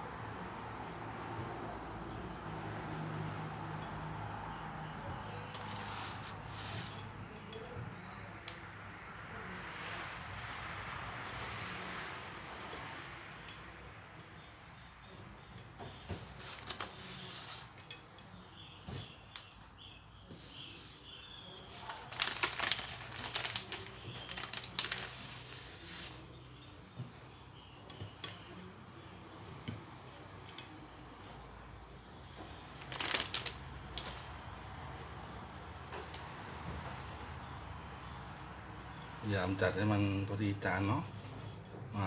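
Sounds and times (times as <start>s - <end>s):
plastic snack packet crinkling: 21.7s - 25.5s, 32.8s - 34.3s.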